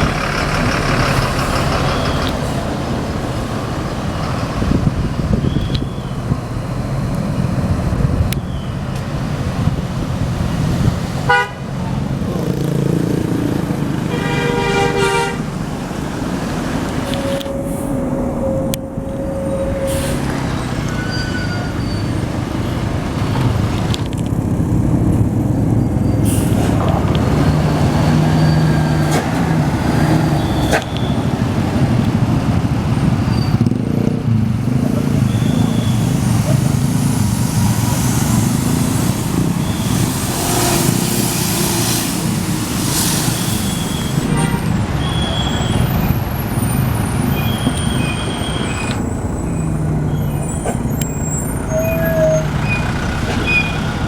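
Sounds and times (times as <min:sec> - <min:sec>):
bus engines: 0:00.0 - 0:54.0
road traffic: 0:00.0 - 0:54.0
held horn tone: 0:11.2 - 0:13.0, 0:13.8 - 0:22.9, 0:33.2 - 0:46.0
multi-tone bus horn: 0:11.2 - 0:22.4, 0:37.8 - 0:46.0.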